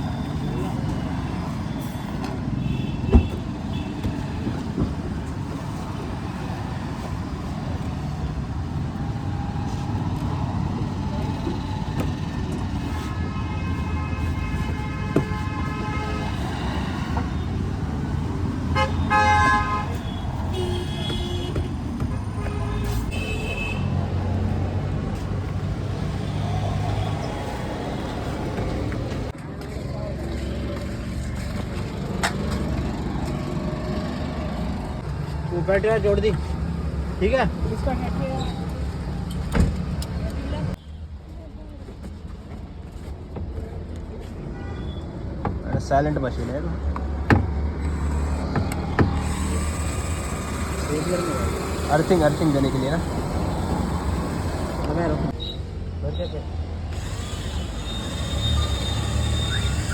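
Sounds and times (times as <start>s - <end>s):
vehicle engines running: 3.6s - 13.1s, 24.0s - 40.8s, 46.1s - 55.4s.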